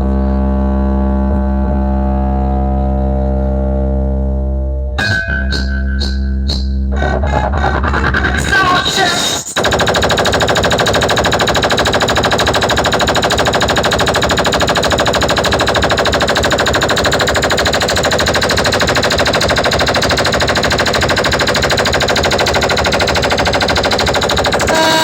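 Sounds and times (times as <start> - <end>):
deep bass: 0.0 - 8.7
rattling electronic pulse: 0.8 - 9.0, 9.6 - 25.0
held electronic tones: 2.5 - 9.2, 24.6 - 25.0.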